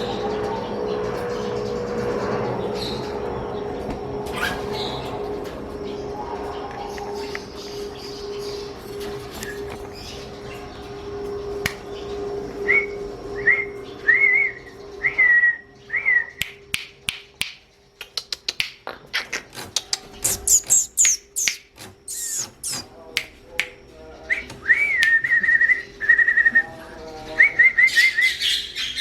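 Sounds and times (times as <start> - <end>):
bird clicking notes and chirps: 16.4 - 23.8
bird whistled notes: 20.2 - 22.9.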